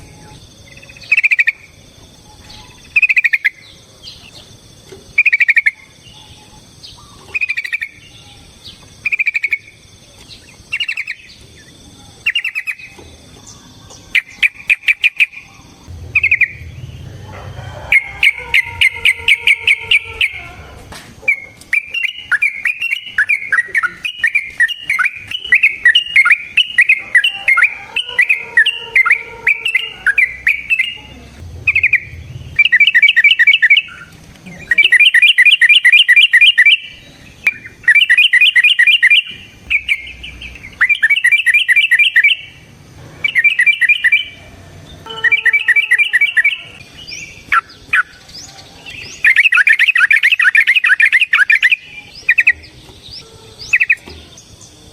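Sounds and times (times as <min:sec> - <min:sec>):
bird singing chattering song: 0:00.0 - 0:17.3, 0:17.9 - 0:54.9.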